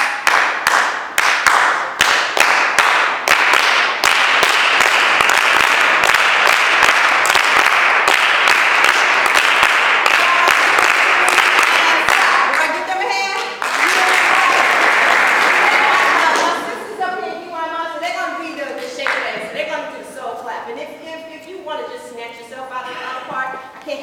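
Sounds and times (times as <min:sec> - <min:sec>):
crowd clapping in rhythm: 0:00.0 - 0:16.9, 0:18.8 - 0:19.5.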